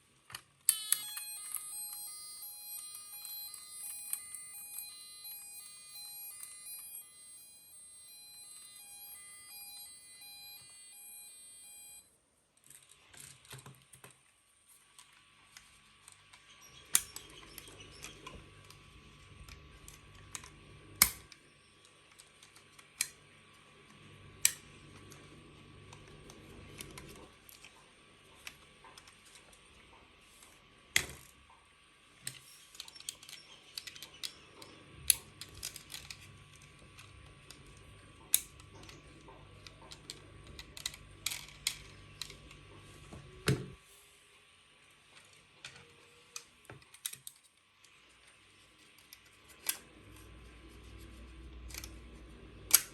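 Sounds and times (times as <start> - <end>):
toy electronic siren beeps: 0.7 - 12.1.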